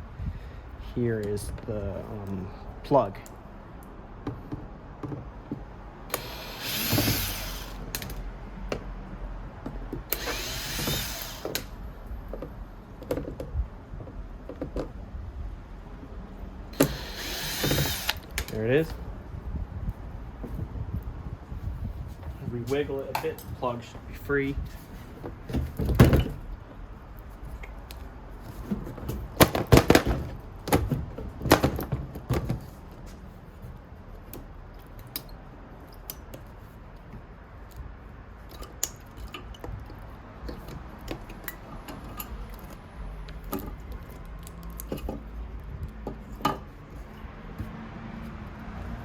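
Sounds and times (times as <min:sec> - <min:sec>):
knocks and rattles of computer parts: 0:25.3 - 0:26.4, 0:28.7 - 0:32.8.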